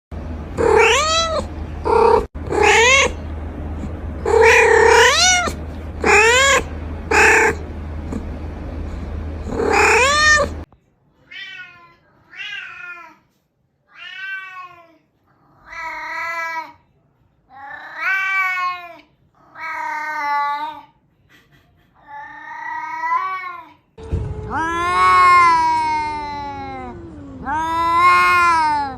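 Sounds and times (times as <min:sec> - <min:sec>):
low hum: 0:00.1 - 0:10.7, 0:24.0 - 0:28.9
cat meowing: 0:00.6 - 0:03.2, 0:04.2 - 0:07.6, 0:09.5 - 0:10.6, 0:11.3 - 0:13.2, 0:13.9 - 0:15.0, 0:22.1 - 0:28.9.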